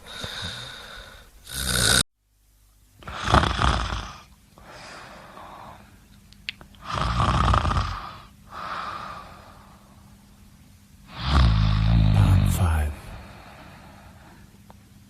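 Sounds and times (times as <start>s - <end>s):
person snoring: 6.8s - 9.6s, 11.1s - 14.2s.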